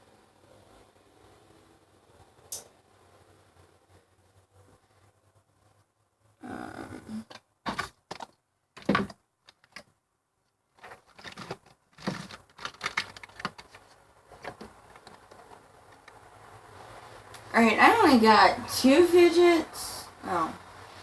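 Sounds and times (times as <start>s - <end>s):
objects rummaged and clattering: 10.7s - 16.0s.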